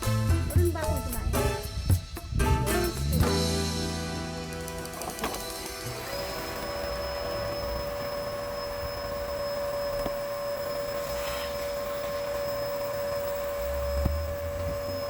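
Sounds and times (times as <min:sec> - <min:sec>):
vacuum cleaner whining: 0:03.1 - 0:15.0.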